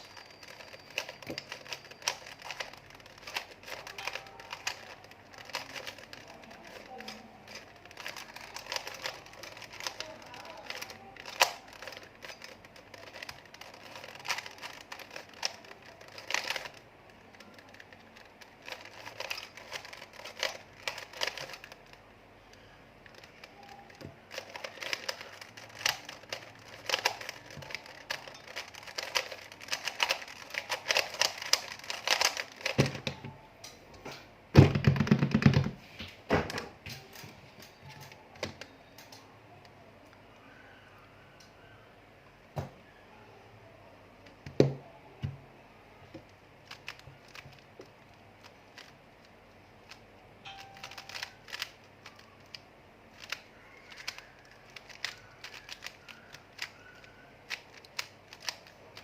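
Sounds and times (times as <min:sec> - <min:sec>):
keyboard typing clicks: 0:49.9 - 0:52.6.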